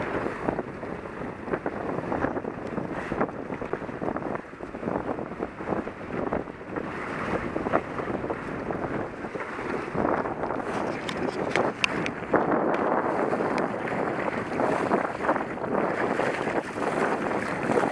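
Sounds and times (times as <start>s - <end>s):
water rushing along hulls: 0.0s - 17.9s
wind buffeting microphone: 0.0s - 17.9s
short splashes: 13.2s - 17.9s.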